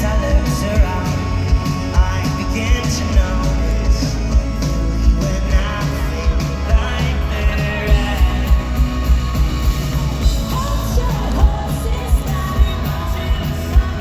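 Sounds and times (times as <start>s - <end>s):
folk-rock band playing live: 0.0s - 14.0s
loud kick-drum beat: 0.0s - 14.0s
person singing: 0.0s - 14.0s.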